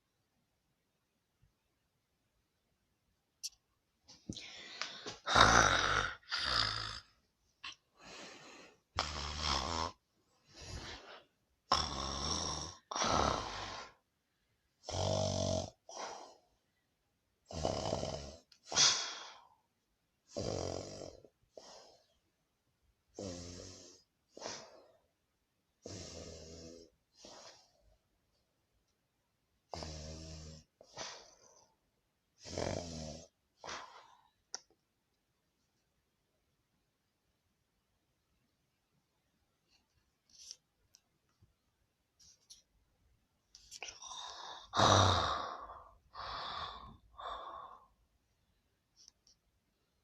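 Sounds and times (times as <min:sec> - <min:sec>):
soft breath: 0:04.2 - 0:05.3, 0:07.6 - 0:08.9, 0:10.3 - 0:11.4, 0:45.3 - 0:48.0
loud rattling snores: 0:05.3 - 0:07.1, 0:09.0 - 0:10.0, 0:11.7 - 0:13.5, 0:14.8 - 0:15.8, 0:17.5 - 0:18.5, 0:20.3 - 0:21.3, 0:23.2 - 0:24.0, 0:25.8 - 0:27.5, 0:29.7 - 0:31.3, 0:32.4 - 0:33.4, 0:44.0 - 0:45.7.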